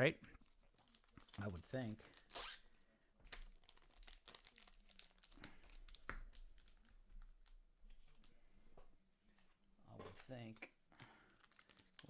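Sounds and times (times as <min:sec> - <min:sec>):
foil wrappers crinkling: 0:00.4 - 0:02.6, 0:03.3 - 0:07.0, 0:11.0 - 0:12.0.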